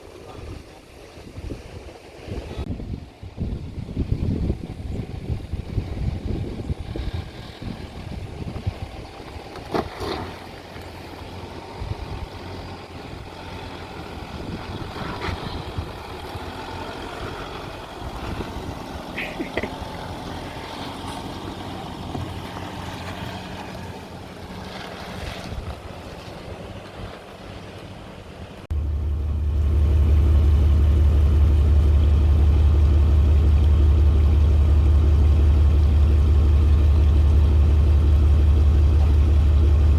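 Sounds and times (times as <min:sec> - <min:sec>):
outdoor noise: 0:00.0 - 0:39.9
vehicle engine running: 0:02.4 - 0:39.9
loud low engine drone: 0:10.2 - 0:24.7, 0:28.2 - 0:39.9.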